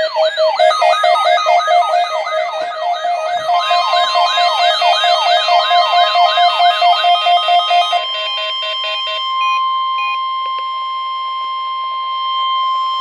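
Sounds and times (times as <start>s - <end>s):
rapid electronic alarm beeping: 0.0s - 13.0s
steady warning alarm tone: 0.0s - 13.0s.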